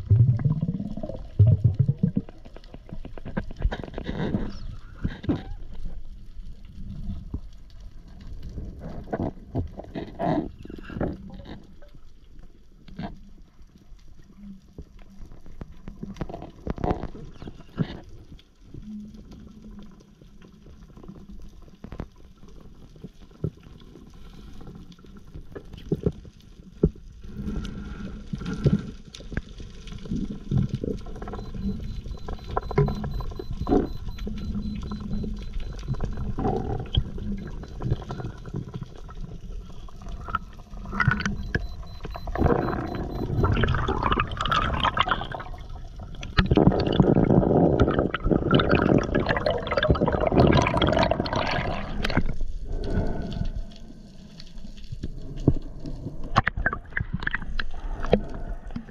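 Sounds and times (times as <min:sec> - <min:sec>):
underwater rumble with gurgling: 0:00.0 - 0:58.9
underwater clicks and pops: 0:30.2 - 0:38.8, 0:40.2 - 0:45.5, 0:46.2 - 0:52.4, 0:56.3 - 0:58.9.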